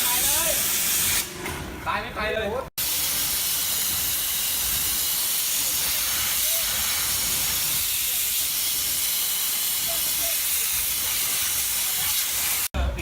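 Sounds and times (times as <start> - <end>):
pressure washer jet hissing: 2.8 - 12.7.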